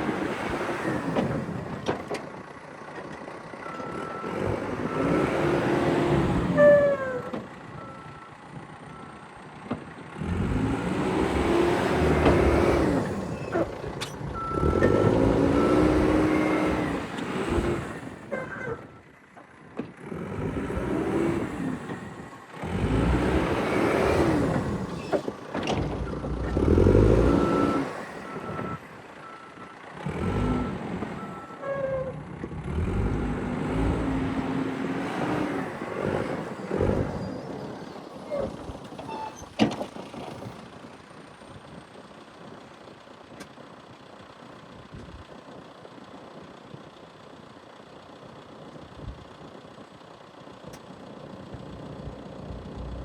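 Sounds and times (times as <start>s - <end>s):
diesel engine revving: 3.6s - 8.2s, 10.0s - 18.7s, 20.0s - 40.6s, 50.9s - 53.0s.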